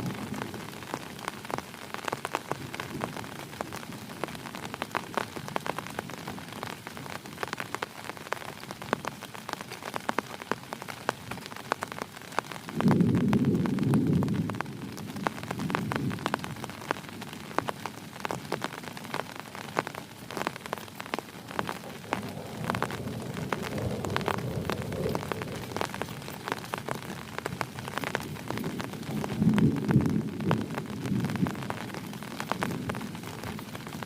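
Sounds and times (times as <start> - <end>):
heavy rain: 0.0 - 34.0
raindrops ticking close by: 0.0 - 34.0
low thunder rumble: 12.7 - 17.0, 21.5 - 33.6.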